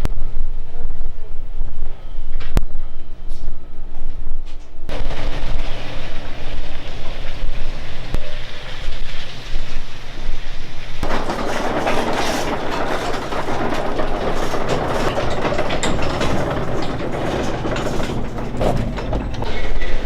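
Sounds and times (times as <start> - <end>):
vehicle low rumble: 0.1 - 20.0
wind and rain rushing: 4.9 - 20.0.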